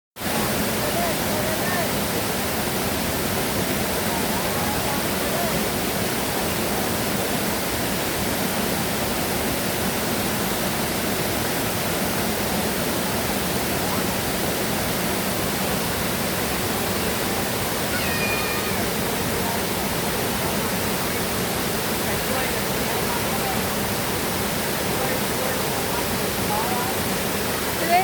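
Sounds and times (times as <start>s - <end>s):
stream water flowing: 0.2s - 28.0s.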